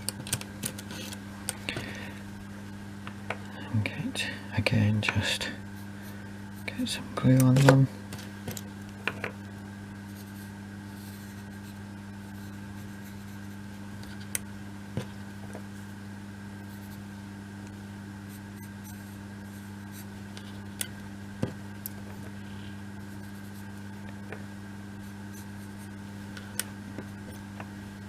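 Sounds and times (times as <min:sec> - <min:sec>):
steady hum: 0:00.0 - 0:28.0
faint scratching: 0:10.0 - 0:13.6.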